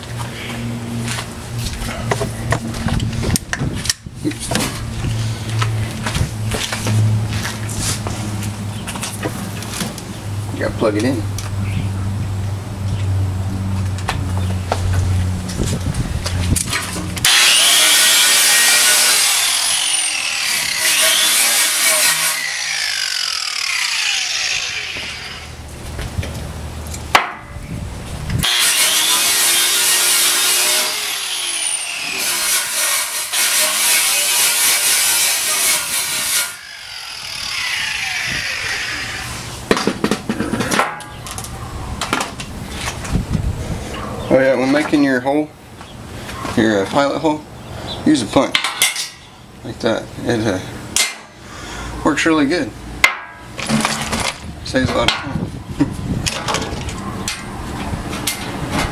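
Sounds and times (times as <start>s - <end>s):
electric drill grinding into metal: 17.2s - 25.5s, 28.4s - 39.4s
motor winding down whine: 22.4s - 25.6s, 36.6s - 39.4s
metal clanks and knocks: 53.0s - 54.4s.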